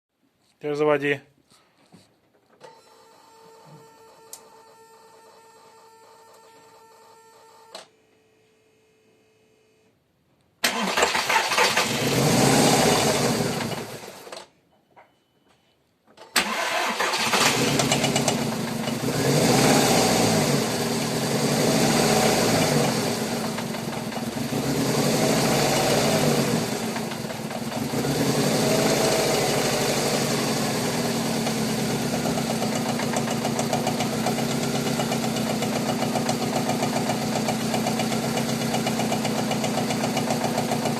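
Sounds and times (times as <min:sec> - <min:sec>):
car engine cranking and revving: 0:10.6 - 0:14.3, 0:16.4 - 0:40.9.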